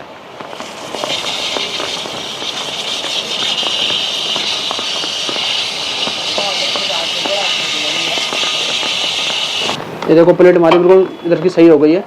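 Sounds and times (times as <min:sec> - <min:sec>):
sandpaper scraping brake disc: 0:00.5 - 0:09.8.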